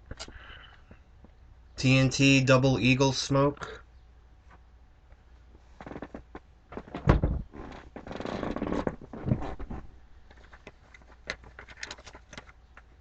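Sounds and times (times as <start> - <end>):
packaging rustling and scraping: 5.8 - 12.6
loud bump: 7.0 - 7.5
packaging crinkling and clicking: 10.3 - 12.9.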